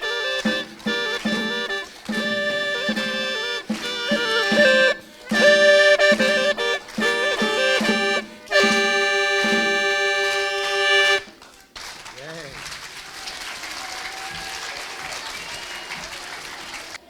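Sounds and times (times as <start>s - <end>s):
drone note: 0.0s - 11.3s
gourd flute folk melody: 0.0s - 11.4s.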